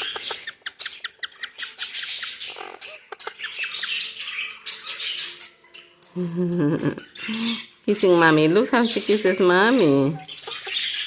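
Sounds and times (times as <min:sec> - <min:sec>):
parrot squawking and chattering: 0:00.0 - 0:07.9, 0:08.8 - 0:11.0.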